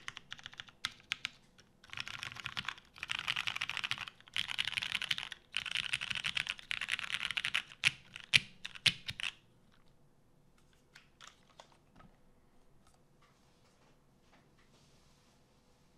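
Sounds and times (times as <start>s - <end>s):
mechanical keyboard typing: 0.0s - 9.4s.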